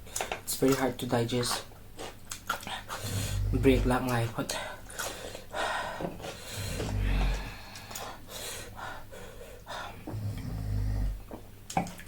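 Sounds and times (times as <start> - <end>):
person gasping breathily: 3.0 - 3.7, 5.0 - 10.0.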